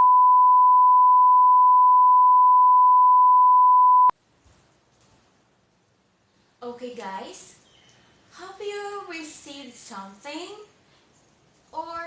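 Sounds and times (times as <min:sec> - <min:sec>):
steady electronic beep: 0:00.0 - 0:04.1.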